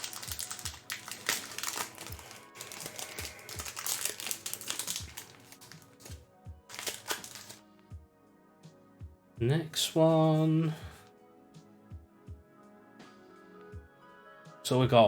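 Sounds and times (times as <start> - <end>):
foil and cards crinkling: 0.0 - 7.6
quiet background music with beat: 0.0 - 15.0.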